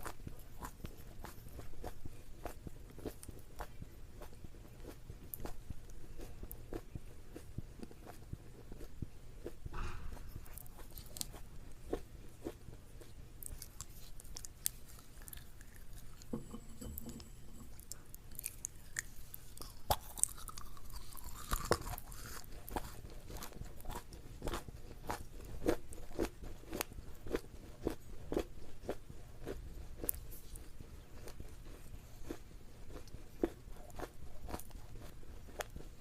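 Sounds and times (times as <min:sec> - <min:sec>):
chewing crunchy food: 0:00.0 - 0:36.0.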